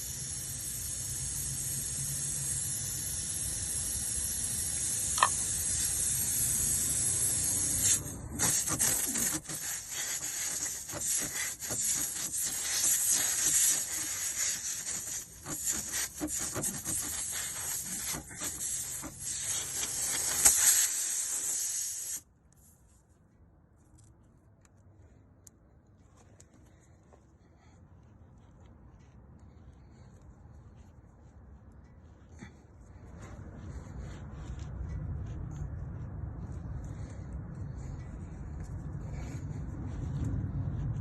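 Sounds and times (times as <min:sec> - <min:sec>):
hissing rasping rub on tire: 0:00.0 - 0:22.3.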